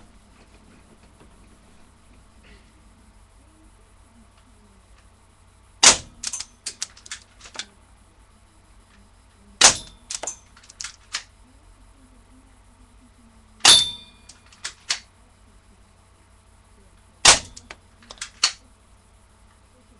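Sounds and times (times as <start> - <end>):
airsoft pistol shots: 5.8 - 6.4, 9.6 - 10.3, 13.6 - 14.0, 17.2 - 18.6.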